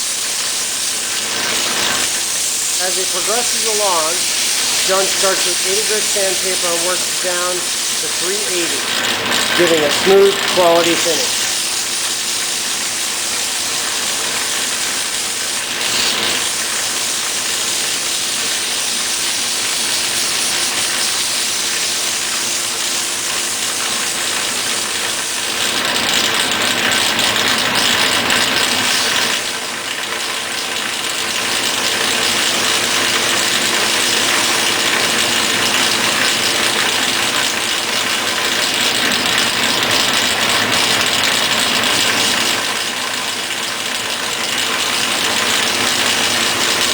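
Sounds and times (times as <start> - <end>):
machine hum: 0.0 - 16.8
sandpaper rubbing on wood: 0.1 - 25.6.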